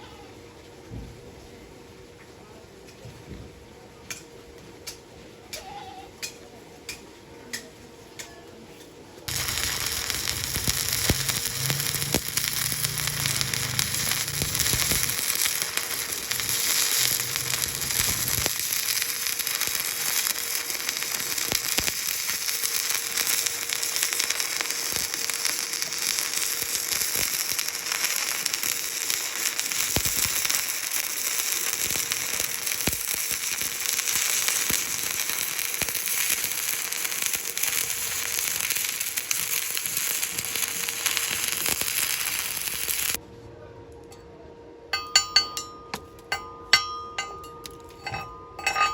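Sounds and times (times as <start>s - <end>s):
welding arc crackling: 9.3s - 43.2s.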